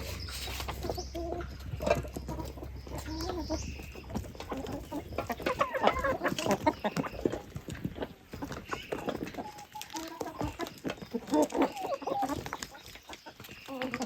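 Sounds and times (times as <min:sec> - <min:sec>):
chickens clucking: 0:00.0 - 0:14.0.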